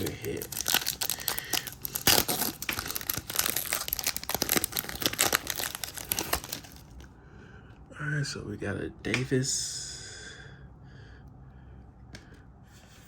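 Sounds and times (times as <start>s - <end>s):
foil wrapper crinkling: 0.0s - 7.0s.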